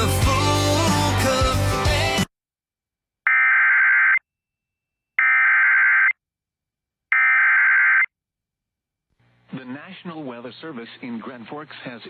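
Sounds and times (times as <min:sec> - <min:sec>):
screechy data tone bursts: 0:03.3 - 0:04.2, 0:05.2 - 0:06.2, 0:07.1 - 0:08.1.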